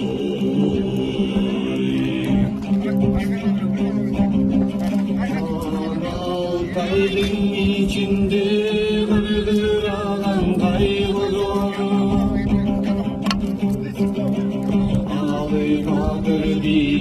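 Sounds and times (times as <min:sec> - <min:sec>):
person singing long wavering notes: 0:00.0 - 0:03.0
strummed lute: 0:00.0 - 0:17.0.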